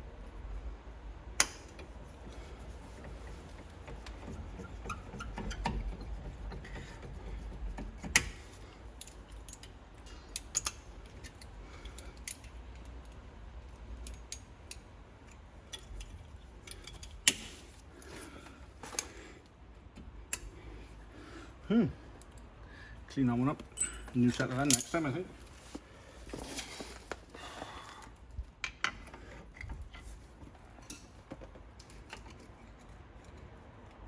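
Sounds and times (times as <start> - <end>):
metal tools clinking and tapping: 23.8 - 25.2.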